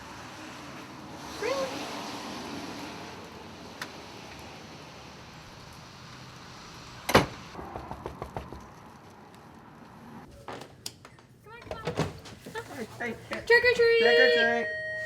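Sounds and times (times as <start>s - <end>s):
door banging shut: 7.1s - 7.4s.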